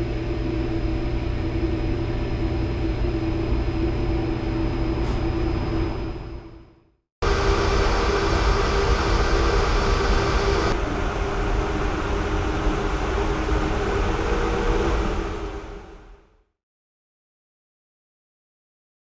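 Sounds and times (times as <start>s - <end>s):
fan motor running: 7.2s - 16.2s.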